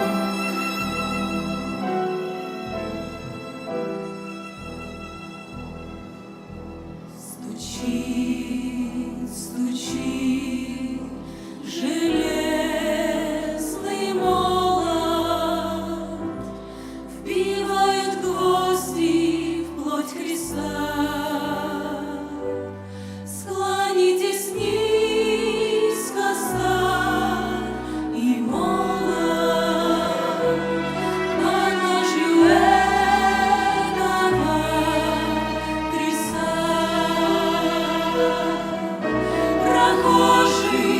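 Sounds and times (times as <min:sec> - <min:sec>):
choir singing a hymn: 0:00.0 - 0:06.1, 0:07.1 - 0:40.9
instrumental accompaniment: 0:00.0 - 0:10.3, 0:24.8 - 0:40.9.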